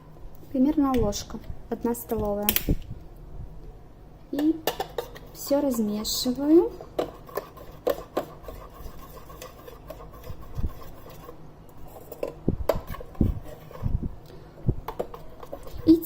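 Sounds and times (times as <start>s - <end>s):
spoon scraping a saucepan: 4.6s - 14.0s, 14.9s - 16.0s.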